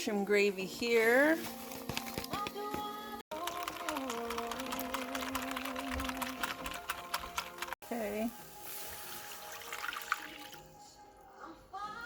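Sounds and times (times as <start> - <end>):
background music with held notes: 0.0 - 12.0
fine crackle: 8.4 - 9.6.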